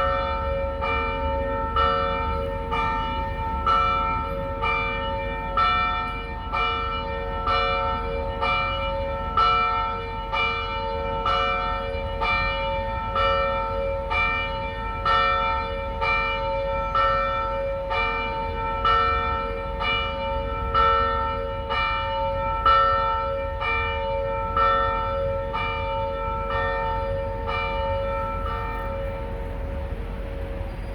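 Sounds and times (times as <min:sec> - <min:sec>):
church bell ringing: 0:00.0 - 0:30.8.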